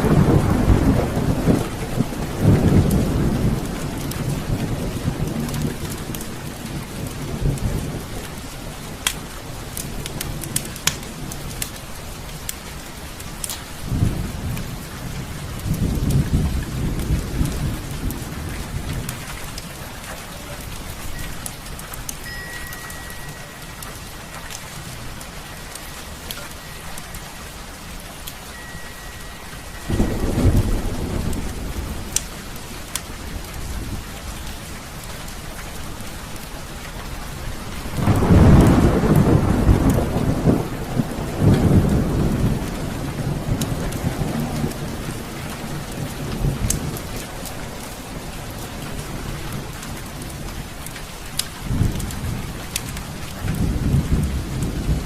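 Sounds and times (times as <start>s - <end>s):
thunder rolling: 0.0s - 9.1s, 23.6s - 34.3s, 37.8s - 49.8s
heavy rain falling: 0.0s - 55.0s
wood fire crackling: 1.2s - 55.0s.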